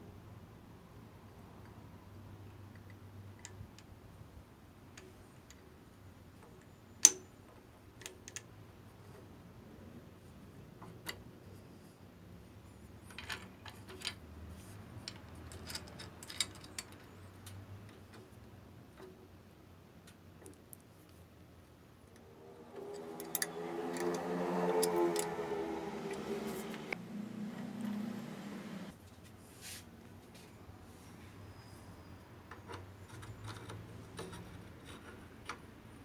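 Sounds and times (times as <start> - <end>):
small hard parts clicking: 14.9 - 18.1, 22.1 - 26.9.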